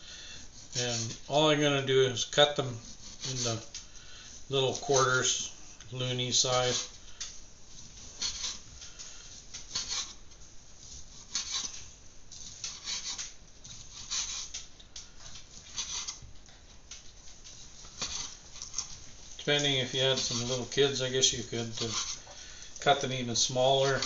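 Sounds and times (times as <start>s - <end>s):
knife cutting sausage: 8.1s - 8.7s, 9.6s - 10.3s, 11.0s - 14.7s, 15.3s - 16.2s, 17.8s - 19.0s, 21.4s - 22.4s.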